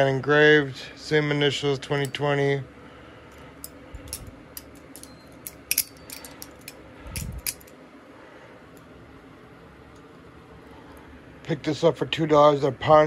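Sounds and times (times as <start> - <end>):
metallic clicks of pocket knives: 3.6 - 7.7.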